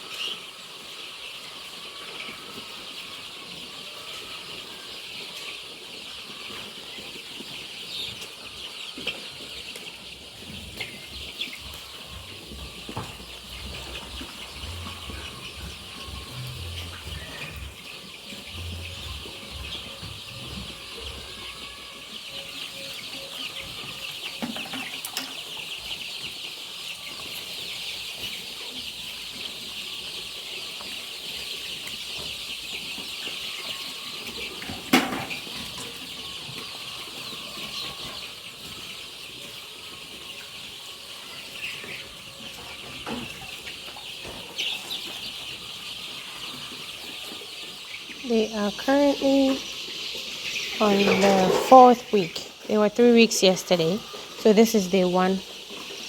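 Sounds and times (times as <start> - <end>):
chicks chirping and peeping: 0.0 - 56.0.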